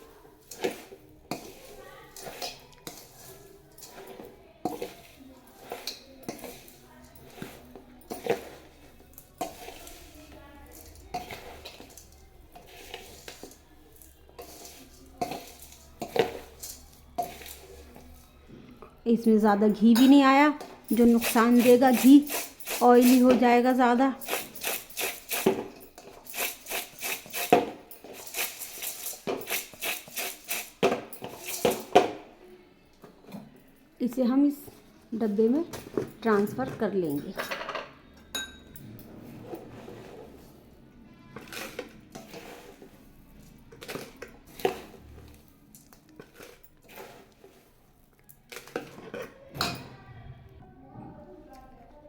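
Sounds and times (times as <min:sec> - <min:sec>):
spoon scraping metal pan: 0:00.0 - 0:18.2, 0:19.8 - 0:32.1, 0:41.4 - 0:43.2, 0:43.8 - 0:45.4, 0:46.2 - 0:47.8.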